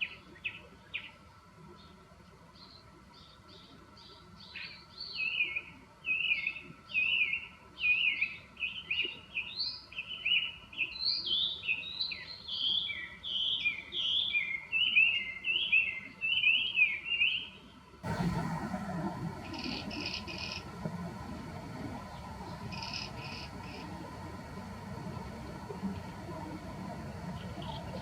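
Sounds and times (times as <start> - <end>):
bird whistled song: 22.0 - 26.2.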